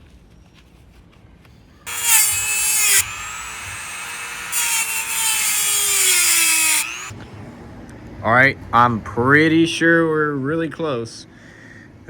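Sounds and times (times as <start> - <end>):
power tool whining cutting steel: 1.9 - 7.2.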